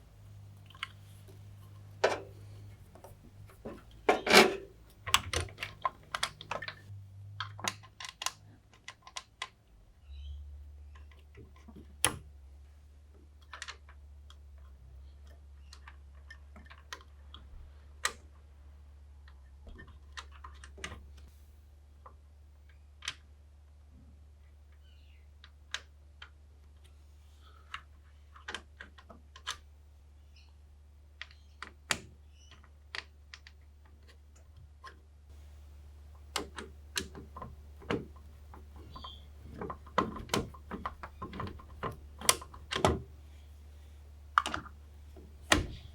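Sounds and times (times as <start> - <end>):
low steady hum: 0.0 - 8.3, 35.2 - 45.9
computer parts clicking: 2.0 - 6.8, 35.3 - 43.1.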